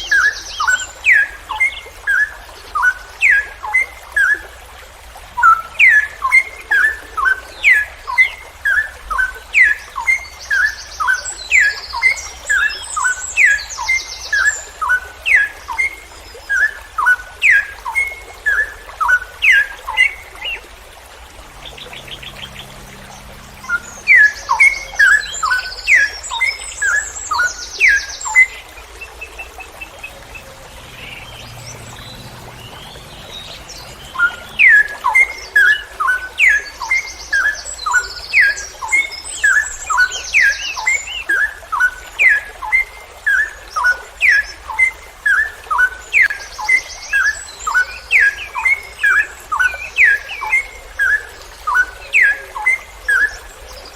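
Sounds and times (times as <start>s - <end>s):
higher buzzy trills: 21.3s - 26.1s.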